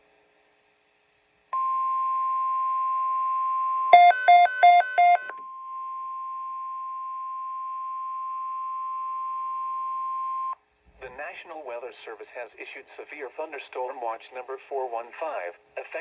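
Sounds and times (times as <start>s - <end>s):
steady warning alarm tone: 3.9s - 5.4s
quick loud alternating beeps: 4.0s - 5.3s.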